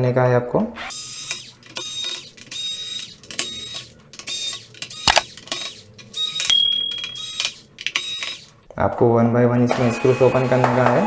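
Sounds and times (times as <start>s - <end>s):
electric screwdriver whining: 0.9s - 8.6s
sharp click: 1.1s - 8.6s.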